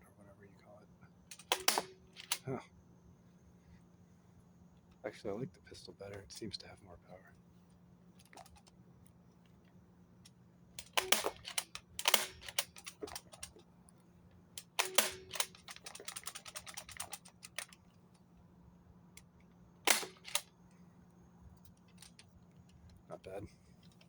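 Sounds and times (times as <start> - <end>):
clicks of handling a toy gun: 1.3 - 2.4, 8.2 - 8.8, 10.2 - 13.7, 14.6 - 18.2, 19.9 - 20.5
toy blaster firing snaps: 1.3 - 2.4, 10.8 - 13.5, 14.6 - 17.7, 19.9 - 20.5.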